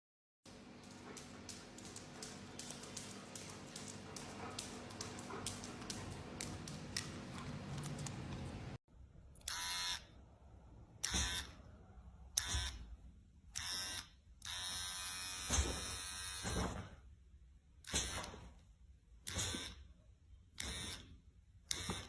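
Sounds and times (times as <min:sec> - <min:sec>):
small electric motor buzzing: 0:09.5 - 0:10.1, 0:13.6 - 0:16.4.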